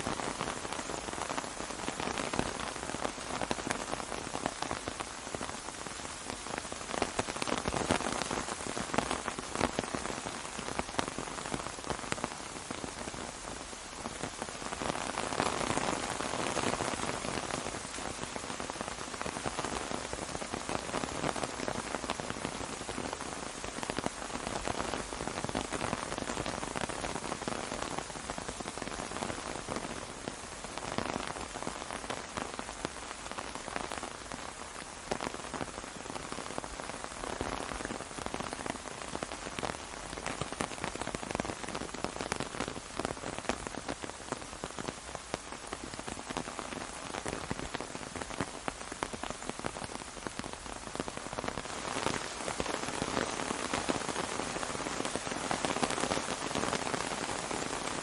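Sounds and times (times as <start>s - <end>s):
rain on an umbrella: 0.0s - 58.0s.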